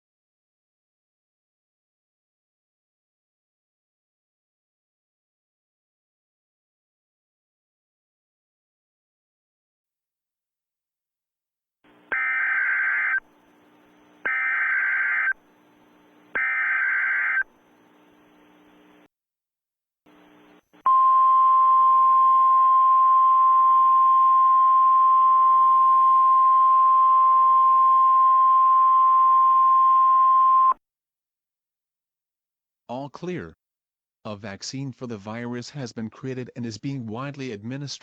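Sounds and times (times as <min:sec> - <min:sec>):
steady attention tone: 0:11.9 - 0:19.1
warbling digital data tones: 0:12.2 - 0:13.2, 0:14.3 - 0:15.4, 0:16.4 - 0:17.5.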